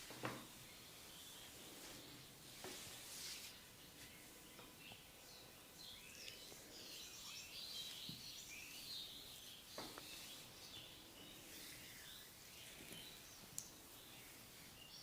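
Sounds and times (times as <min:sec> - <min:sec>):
bird chirping: 0:03.6 - 0:15.0.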